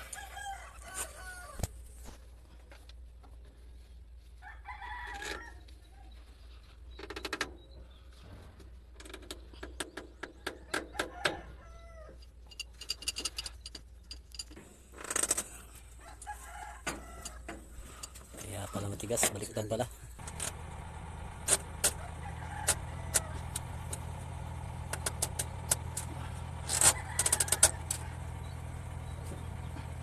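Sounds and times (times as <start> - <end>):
rooster crowing: 0.0 - 1.6, 4.4 - 5.6, 10.9 - 12.2, 16.0 - 17.6, 22.0 - 23.7, 26.2 - 28.4.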